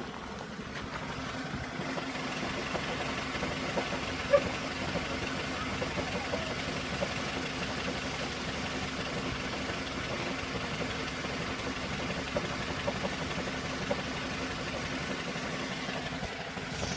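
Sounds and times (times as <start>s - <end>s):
car engine idling: 0.0s - 16.9s.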